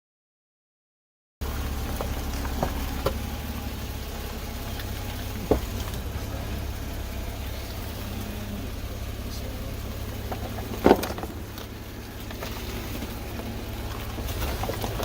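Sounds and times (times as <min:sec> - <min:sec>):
car engine and road rumble: 0:01.4 - 0:15.0
short knocks: 0:05.3 - 0:06.3, 0:10.2 - 0:13.2.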